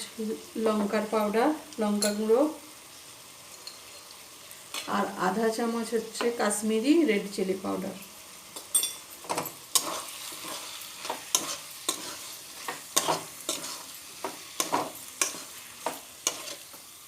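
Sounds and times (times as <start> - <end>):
food sizzling in oil: 0.0 - 17.0
spatula scraping a pan: 9.3 - 16.9.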